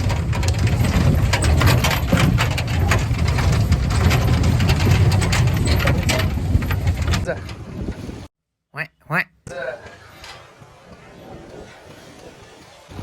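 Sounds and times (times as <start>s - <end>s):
rattles and knocks: 0.0s - 8.1s
vehicle engine rumbling: 0.0s - 8.3s.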